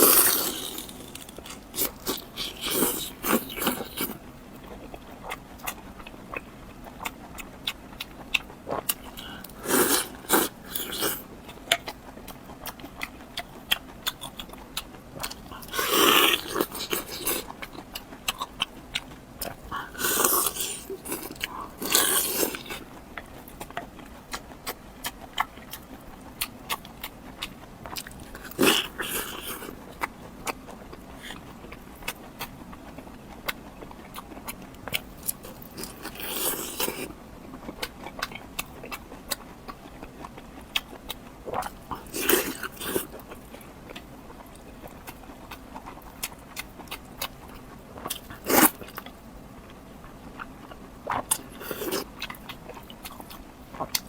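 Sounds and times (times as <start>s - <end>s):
loud bite crunch: 0.0s - 4.1s, 9.2s - 11.2s, 19.7s - 22.8s, 48.1s - 49.0s
chewing with mouth clicks: 0.0s - 54.0s.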